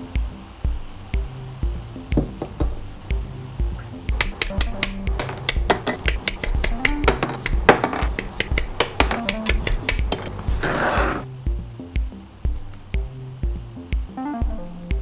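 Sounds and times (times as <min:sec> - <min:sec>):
background music with bass beat: 0:00.0 - 0:07.7, 0:11.2 - 0:15.0
hissing scrape: 0:10.3 - 0:11.3.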